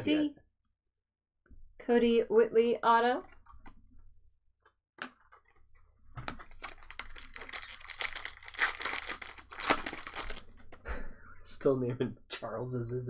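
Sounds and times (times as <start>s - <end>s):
wrapper tearing and crinkling: 6.3s - 10.8s.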